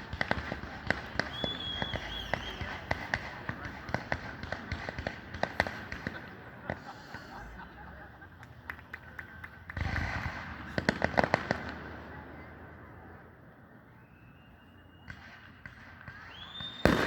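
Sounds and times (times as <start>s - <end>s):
fireworks popping and cracking: 0.0s - 12.2s, 15.1s - 17.0s
short high whistle: 14.0s - 17.0s.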